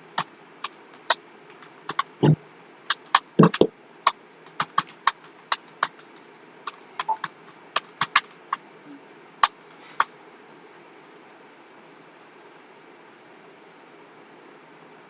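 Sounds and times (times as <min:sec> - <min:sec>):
keyboard key clicks: 0:01.9 - 0:03.7.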